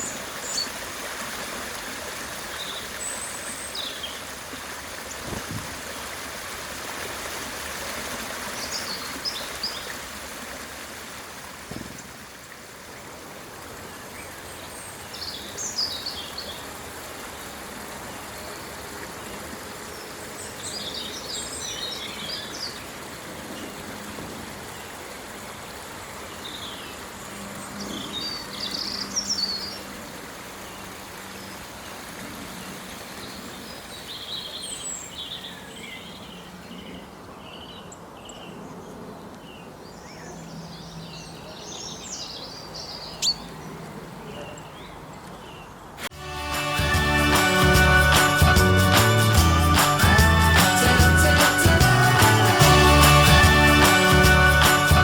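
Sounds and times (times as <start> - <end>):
small birds chirping: 40.1 - 45.8.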